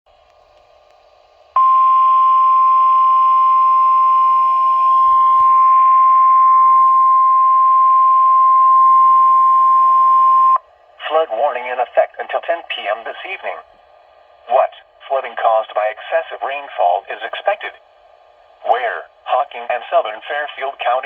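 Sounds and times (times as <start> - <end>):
loud steady alarm tone: 1.6 - 10.6
radio receiver hiss: 5.0 - 5.8, 11.0 - 17.8, 18.4 - 21.0.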